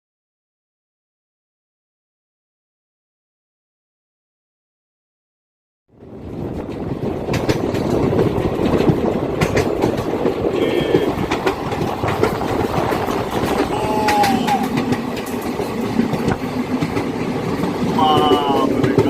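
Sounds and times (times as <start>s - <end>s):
train wheels rumbling on track: 5.9s - 19.0s
clacks over rail joints: 6.1s - 19.0s.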